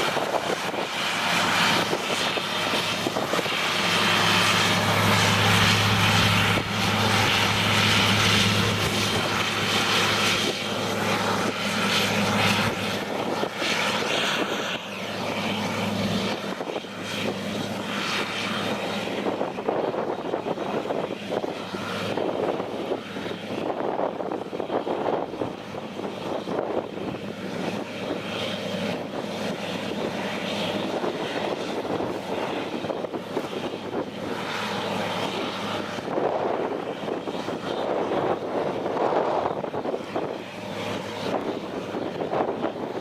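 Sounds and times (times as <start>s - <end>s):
engine humming: 0.0s - 23.2s.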